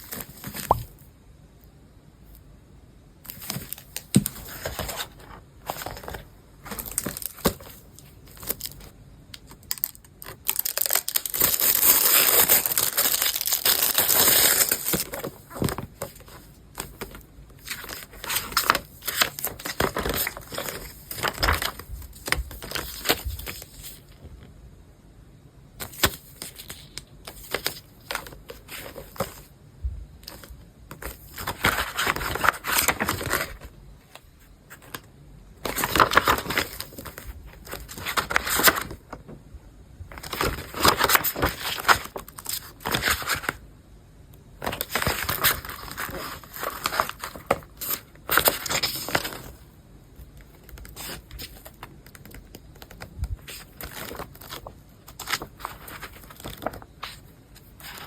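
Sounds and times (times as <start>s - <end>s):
packaging crinkling and tearing: 9.7s - 16.2s.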